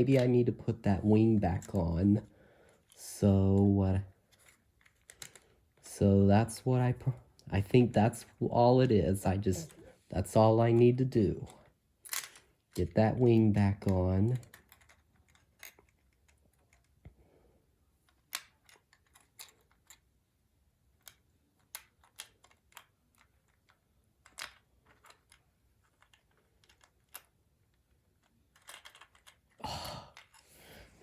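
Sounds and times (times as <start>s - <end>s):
plastic toy parts clicking: 4.3s - 5.5s, 11.4s - 13.0s, 13.7s - 17.0s, 18.0s - 20.2s, 20.9s - 30.5s.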